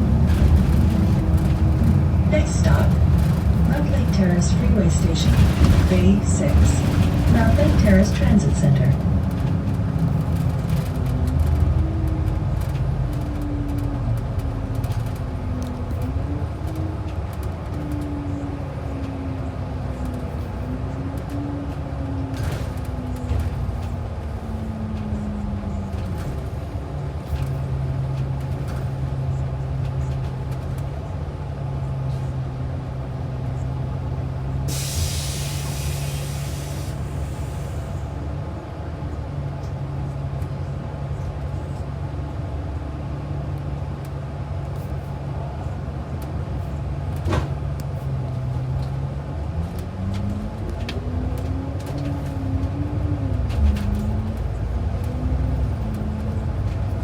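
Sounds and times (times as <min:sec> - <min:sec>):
bus engine: 0:00.0 - 0:57.0
air brakes hissing: 0:34.7 - 0:38.1.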